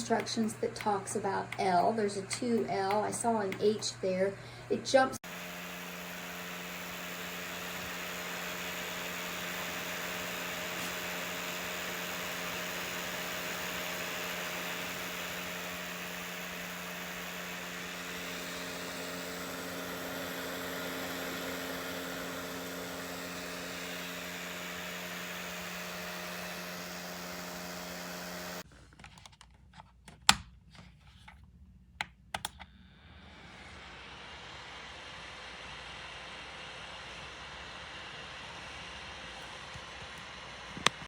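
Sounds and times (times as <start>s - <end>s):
control buttons clicking: 0.0s - 4.0s
space heater fan whooshing: 0.0s - 28.7s.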